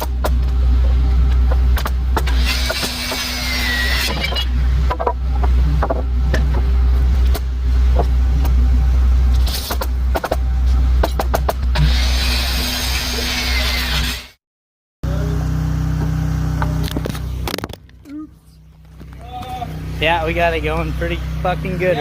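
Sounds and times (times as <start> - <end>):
steady low rumble: 0.0 - 2.5, 4.4 - 11.8, 15.0 - 22.0
sharp knocks and clicks: 4.8 - 8.6, 9.7 - 10.4, 11.0 - 11.8.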